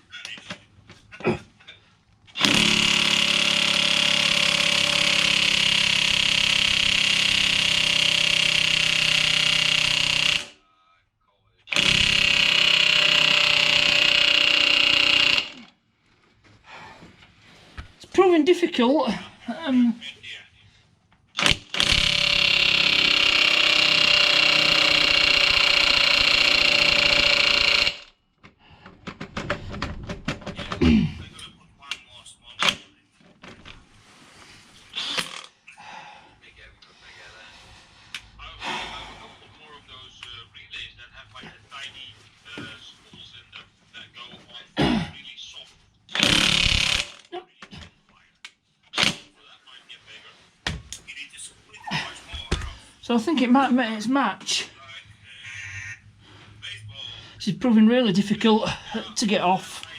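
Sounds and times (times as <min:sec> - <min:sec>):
impact wrench hammering: 0:02.4 - 0:10.6, 0:11.7 - 0:15.7, 0:21.4 - 0:28.1, 0:46.2 - 0:47.2.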